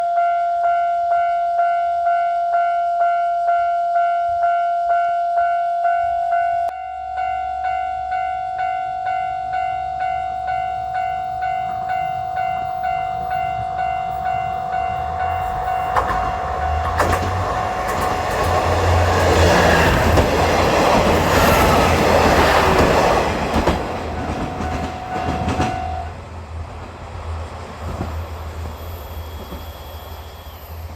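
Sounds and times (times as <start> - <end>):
level-crossing warning bell: 0.0 - 26.2
diesel train engine rumble: 9.0 - 30.9
train wheel clatter: 11.6 - 30.4.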